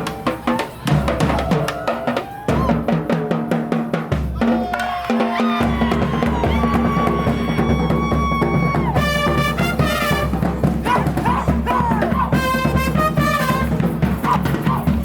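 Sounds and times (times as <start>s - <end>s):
bass drum and snare beat: 0.0s - 15.0s
street band playing: 0.0s - 15.0s
horns playing held notes: 9.0s - 11.0s, 12.4s - 13.8s.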